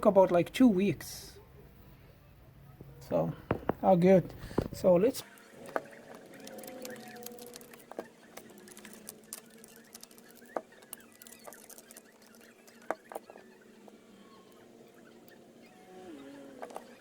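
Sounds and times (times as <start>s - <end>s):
faint steady hum: 0.0s - 17.0s
small parts clicking and tapping: 3.5s - 17.0s.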